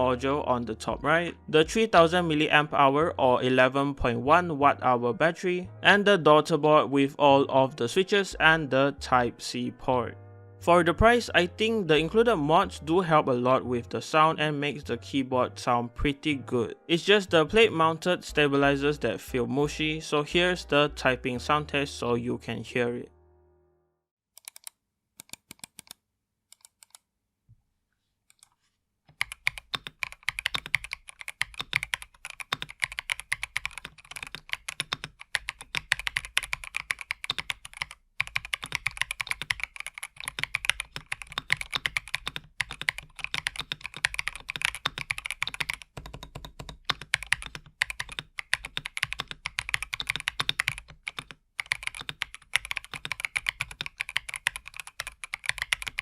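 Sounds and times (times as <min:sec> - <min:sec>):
typing on mechanical keyboard: 0:24.4 - 0:26.0, 0:29.1 - 0:56.0.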